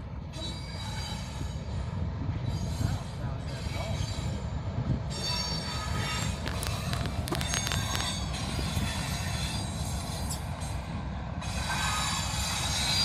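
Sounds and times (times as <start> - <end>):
train wheels rumbling on rail: 0.0 - 13.0
sharp clicks and squeaks: 6.1 - 8.2.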